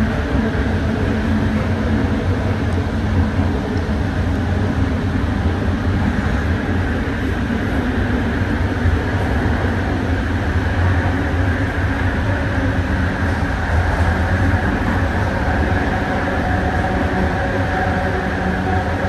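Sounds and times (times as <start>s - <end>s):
train wheel on rail rumble: 0.0s - 19.0s.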